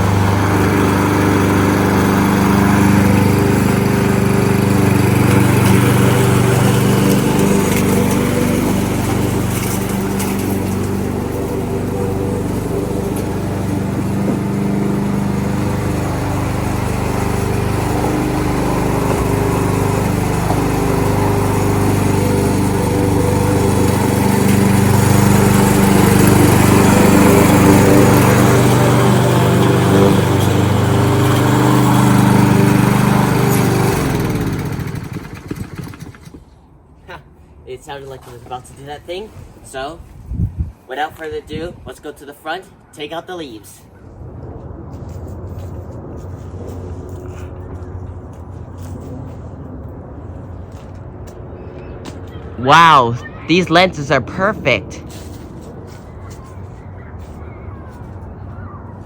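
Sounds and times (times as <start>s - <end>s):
lawnmower engine running: 0.0s - 36.5s.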